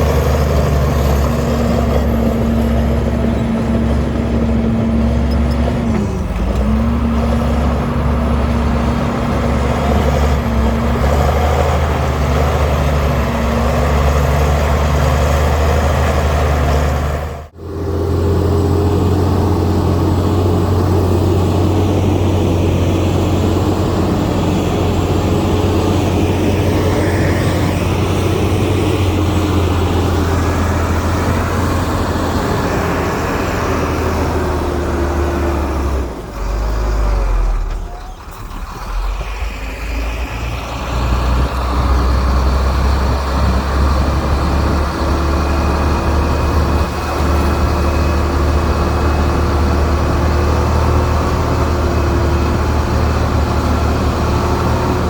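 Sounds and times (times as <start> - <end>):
heavy diesel engine droning: 0.0 - 55.0.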